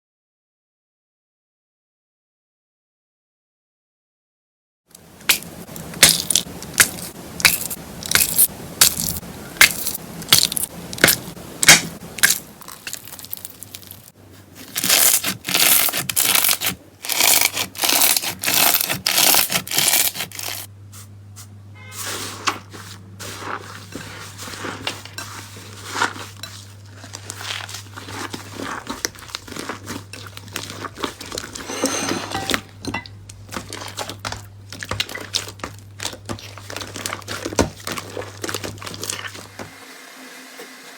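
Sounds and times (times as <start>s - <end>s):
crunchy slime squishes: 5.0s - 20.7s, 22.0s - 31.7s, 33.2s - 39.5s
low steady hum: 5.0s - 21.9s
slime popping and crackling: 5.2s - 14.1s, 14.7s - 20.7s.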